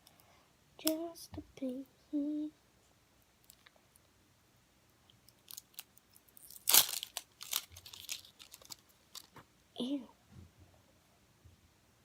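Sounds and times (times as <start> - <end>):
plastic wrapping crinkling: 5.3 - 9.5.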